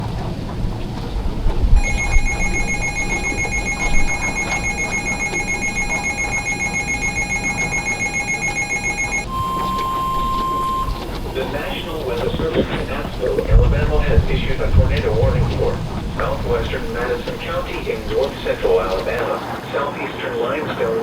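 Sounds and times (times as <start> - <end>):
electronic alarm tone pulsing: 1.8 - 13.0.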